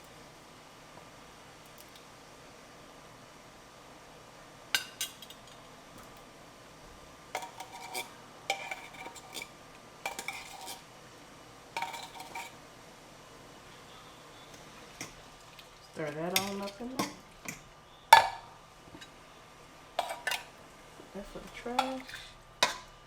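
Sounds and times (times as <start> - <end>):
metal spoon scraping metal container: 7.4 - 9.5, 10.1 - 10.8, 11.8 - 12.6, 20.0 - 20.5, 21.2 - 22.9.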